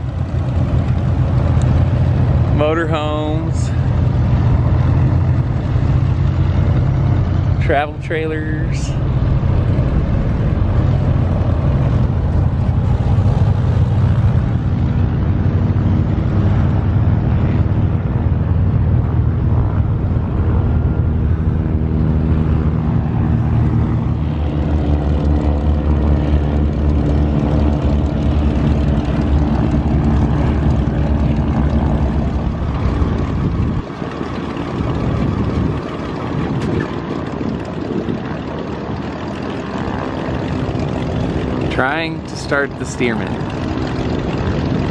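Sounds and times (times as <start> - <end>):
heavy low rumble: 0.0 - 44.9
propeller drone: 0.0 - 44.9.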